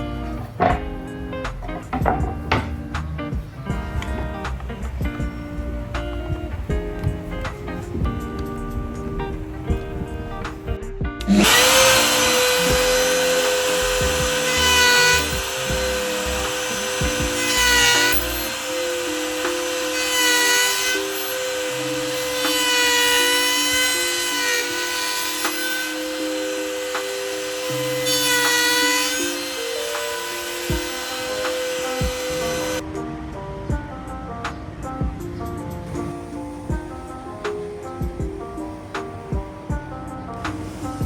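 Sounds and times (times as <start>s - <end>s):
background music: 0.0s - 41.0s
power tool whining: 11.2s - 32.8s, 35.9s - 41.0s.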